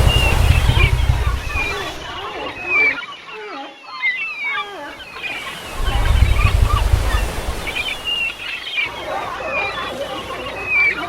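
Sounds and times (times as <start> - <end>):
low rumble with hiss: 0.0 - 2.4, 5.7 - 8.5.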